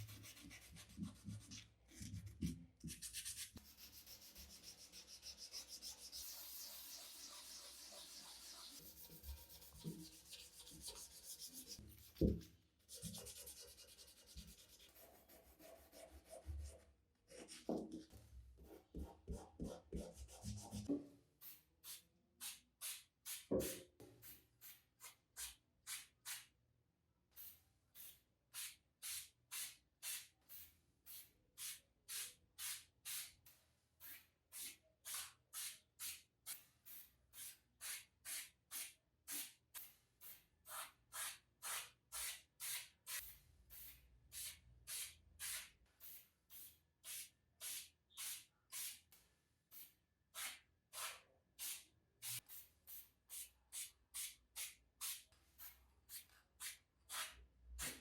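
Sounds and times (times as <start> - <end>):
sandpaper rubbing: 2.9 - 12.2, 12.9 - 16.8.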